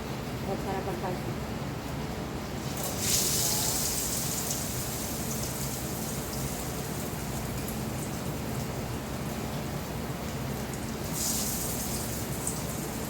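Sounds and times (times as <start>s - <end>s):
rain hissing: 2.7s - 7.7s, 10.6s - 13.0s.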